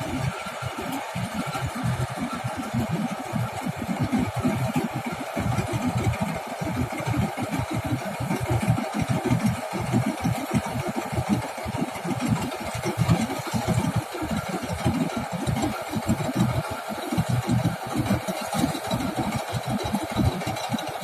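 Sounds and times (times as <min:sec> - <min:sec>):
harvester engine running: 0:00.0 - 0:21.0.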